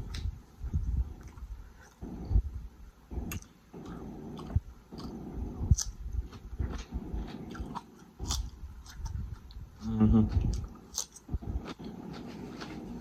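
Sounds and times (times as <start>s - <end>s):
chewing and biting sandwich: 3.2s - 13.0s.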